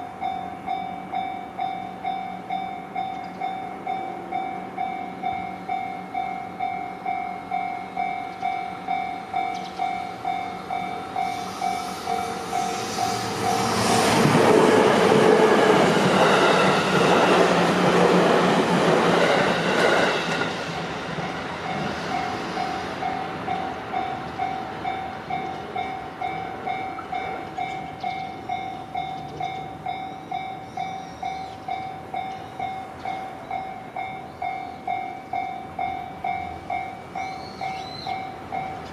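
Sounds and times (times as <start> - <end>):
level-crossing two-tone bell: 0.0 - 13.9, 21.6 - 38.9
train passing over crossing: 0.0 - 38.9.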